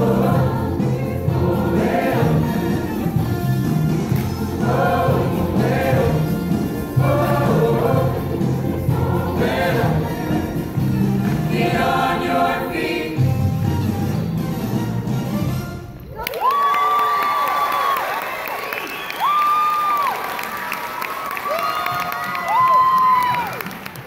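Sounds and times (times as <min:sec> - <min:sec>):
choir singing: 0:00.0 - 0:13.6.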